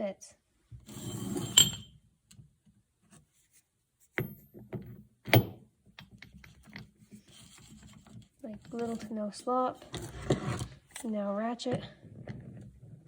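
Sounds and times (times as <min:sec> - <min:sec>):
metal parts clunking and scraping: 0:00.9 - 0:01.9.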